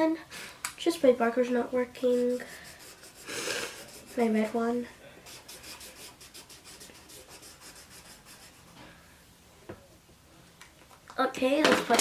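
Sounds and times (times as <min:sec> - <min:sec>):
marker scratching on paper: 0:01.9 - 0:04.6, 0:05.2 - 0:08.7.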